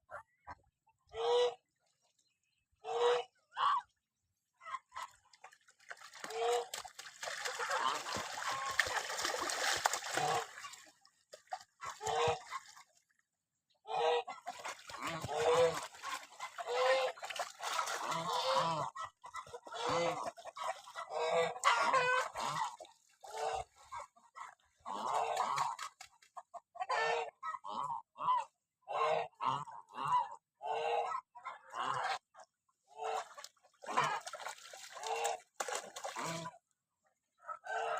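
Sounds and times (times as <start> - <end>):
geese honking: 14.0 - 23.7.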